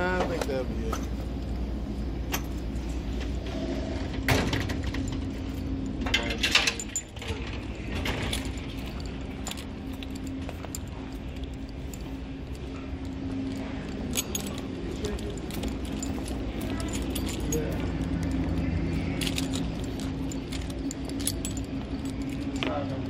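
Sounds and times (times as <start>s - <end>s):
steady low hum: 0.0s - 23.0s
small hard items clinking: 4.7s - 23.0s.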